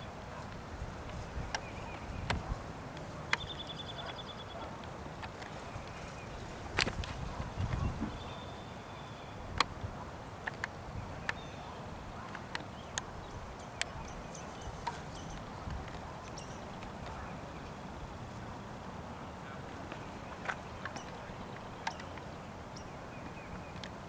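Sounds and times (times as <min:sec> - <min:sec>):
faint bird chirps: 0:12.7 - 0:18.0, 0:19.5 - 0:23.8
sharp ticks: 0:20.4 - 0:22.3.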